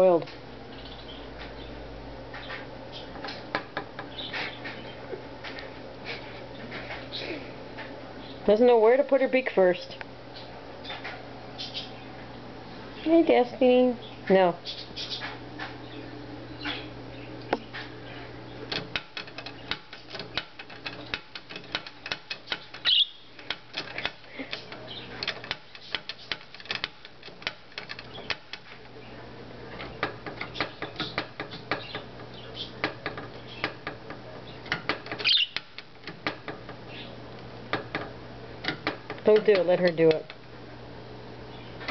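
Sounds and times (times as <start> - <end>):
bird beak pecking door knob: 18.7 - 28.7, 29.9 - 32.1.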